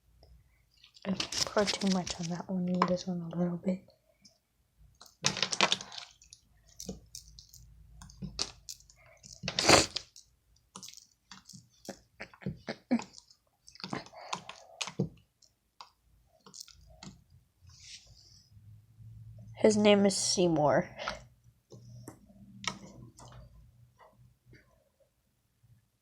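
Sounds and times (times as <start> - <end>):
sticky slime squelching: 5.0 - 17.3.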